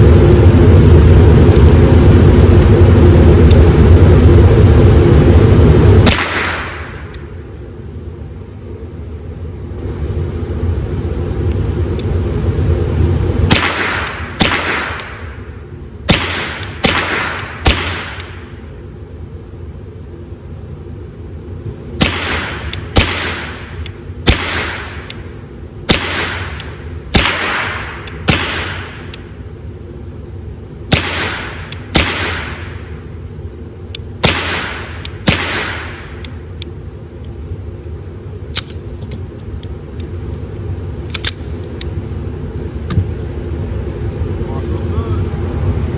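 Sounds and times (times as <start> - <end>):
steady low rumble: 0.0 - 45.9
rifle shots echoing: 6.0 - 7.1, 13.5 - 15.5, 16.1 - 18.6, 22.0 - 25.3, 25.9 - 29.2, 30.9 - 33.0, 34.2 - 36.2.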